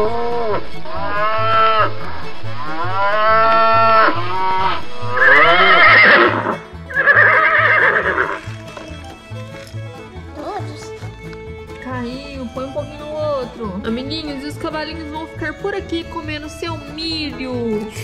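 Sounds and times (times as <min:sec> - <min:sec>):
background music with steady beat: 0:00.0 - 0:18.0
farm animal calls: 0:02.7 - 0:08.4
horse whinnies: 0:02.8 - 0:08.5.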